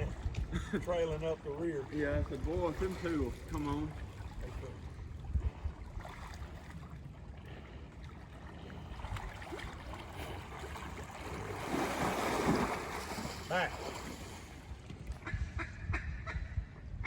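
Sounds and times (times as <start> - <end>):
wind rumble on microphone: 0.0 - 7.4, 14.0 - 17.0
faint water sounds: 0.0 - 15.9.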